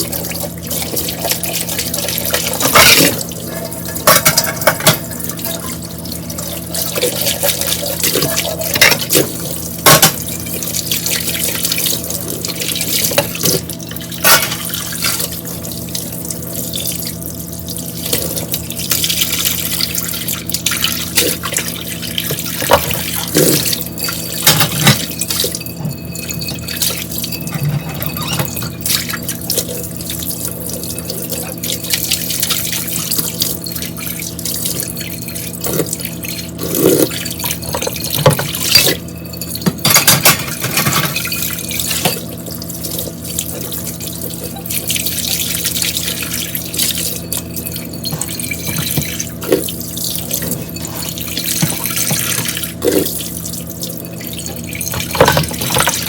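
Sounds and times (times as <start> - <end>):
tap water running into sink: 0.0 - 56.0
dishware clinking and knocking: 3.8 - 5.6, 22.6 - 28.8, 37.0 - 42.3, 54.9 - 56.0.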